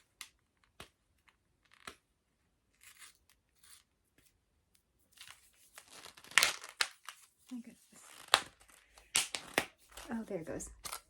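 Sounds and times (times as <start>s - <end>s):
plastic crinkling: 5.5s - 11.0s.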